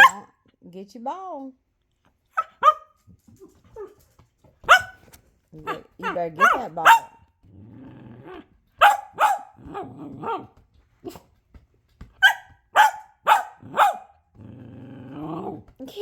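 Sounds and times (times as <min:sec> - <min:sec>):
puppy barking: 0:00.0 - 0:00.3, 0:02.4 - 0:03.0, 0:04.6 - 0:07.2, 0:08.8 - 0:10.5, 0:12.2 - 0:14.2
puppy yapping: 0:02.4 - 0:03.0, 0:04.6 - 0:07.2, 0:08.8 - 0:10.5, 0:12.2 - 0:14.1
puppy growling: 0:05.6 - 0:11.3, 0:13.3 - 0:15.8.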